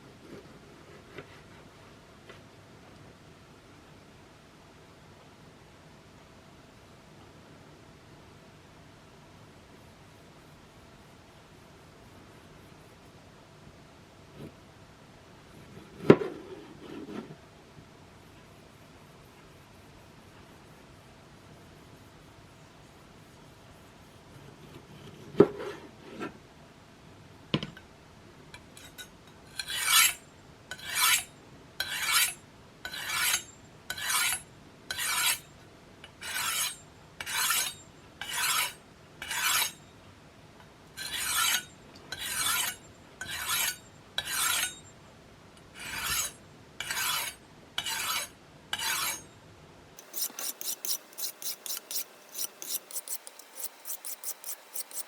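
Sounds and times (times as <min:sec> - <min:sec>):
knife rasping on sharpening plate: 0:29.6 - 0:31.2, 0:32.9 - 0:35.4, 0:41.0 - 0:44.8, 0:45.9 - 0:49.2, 0:50.0 - 0:55.0.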